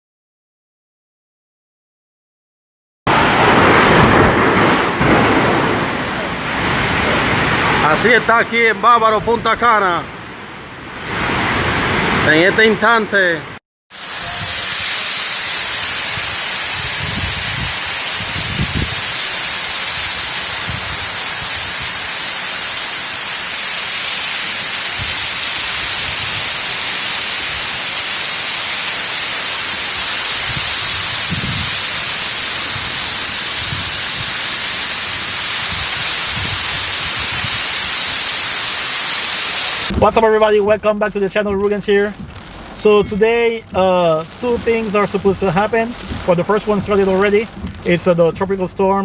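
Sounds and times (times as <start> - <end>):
heavy rain and wind: 3.1 - 49.0
low rumbles: 39.9 - 49.0.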